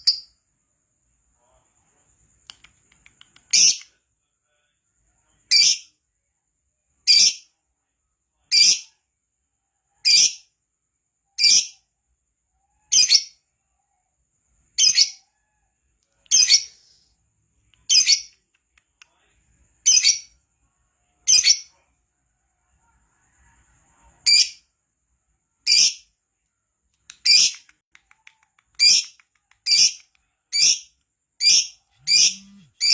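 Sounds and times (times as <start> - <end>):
lovebird shrill chirps: 0.0 - 0.4, 3.2 - 3.9, 5.5 - 5.9, 7.1 - 7.5, 8.5 - 8.9, 10.0 - 10.5, 11.4 - 11.8, 12.9 - 13.4, 14.8 - 15.3, 16.3 - 16.8, 17.8 - 18.4, 19.8 - 20.4, 21.2 - 21.7, 24.2 - 24.6, 25.6 - 26.1, 27.1 - 28.2, 28.8 - 32.9.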